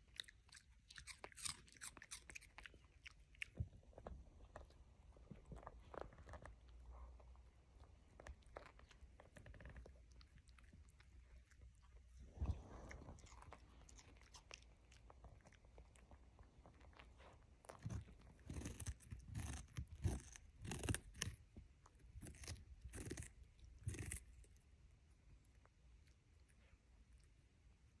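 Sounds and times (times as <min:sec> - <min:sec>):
dog chewing and crunching: 0:00.0 - 0:24.6.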